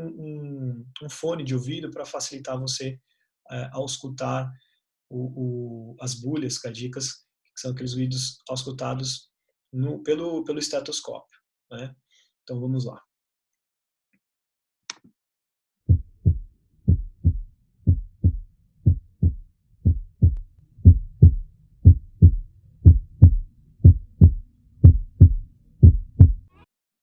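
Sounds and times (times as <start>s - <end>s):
heartbeat through stethoscope: 15.9s - 26.5s.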